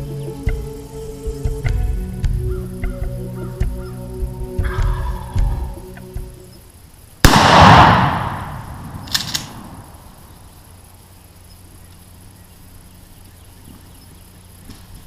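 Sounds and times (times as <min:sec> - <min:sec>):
shotgun shot: 0:07.2 - 0:10.1
short clicks: 0:08.4 - 0:09.9.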